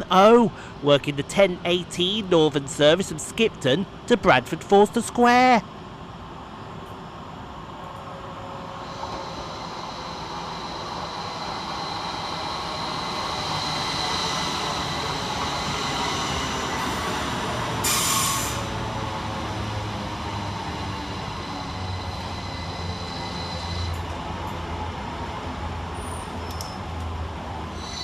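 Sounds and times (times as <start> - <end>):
train running noise: 0.0 - 28.0
train wheels squealing: 8.7 - 18.8, 20.4 - 24.1, 26.0 - 26.9, 27.7 - 28.0
brief loud hiss: 17.8 - 18.7.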